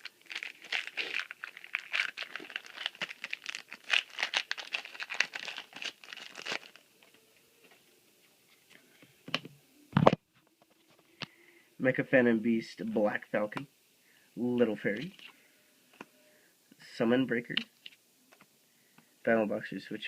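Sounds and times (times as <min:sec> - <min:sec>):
foil pack crinkling and tearing: 0:00.0 - 0:06.8.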